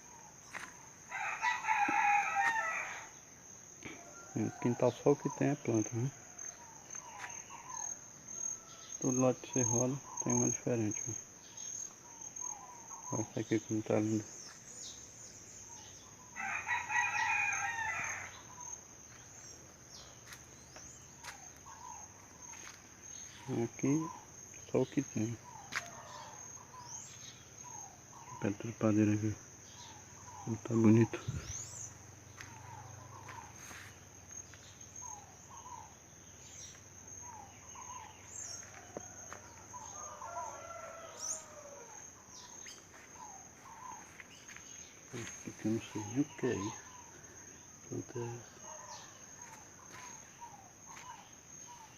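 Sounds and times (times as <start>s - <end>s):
dove paired call: 0.0s - 3.2s, 3.8s - 14.7s, 15.6s - 19.2s, 20.2s - 29.0s, 29.7s - 34.0s, 35.0s - 36.0s, 36.6s - 51.9s
crickets chirring: 0.0s - 51.9s
rooster crowing: 1.1s - 3.2s, 3.9s - 5.4s, 6.0s - 9.2s, 16.3s - 18.8s, 25.5s - 26.8s, 37.5s - 42.6s.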